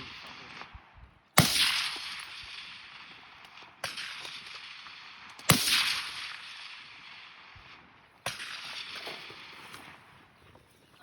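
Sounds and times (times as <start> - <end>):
rifle shots echoing: 0.0 - 10.4.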